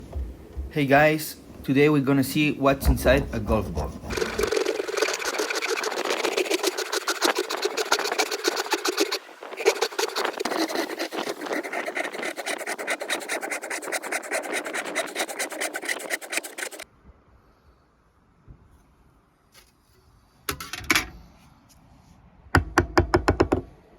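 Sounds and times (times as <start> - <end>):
blade rasping through golf ball: 2.8 - 16.8.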